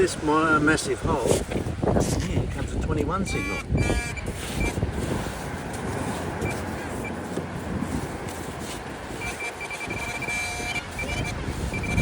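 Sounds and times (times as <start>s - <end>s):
wind: 0.0s - 12.0s
metal detector beeps: 3.2s - 4.8s, 6.4s - 7.2s, 9.1s - 12.0s.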